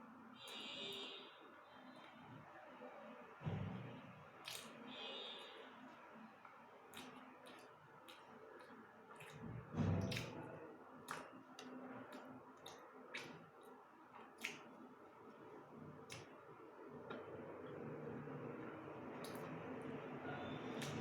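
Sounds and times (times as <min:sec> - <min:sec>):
lip smacks and clicks: 0:04.4 - 0:04.7, 0:06.4 - 0:09.5, 0:11.1 - 0:13.8, 0:14.4 - 0:14.8, 0:16.0 - 0:16.4
wet squishy chewing: 0:04.4 - 0:05.6, 0:06.4 - 0:17.4, 0:18.6 - 0:21.0.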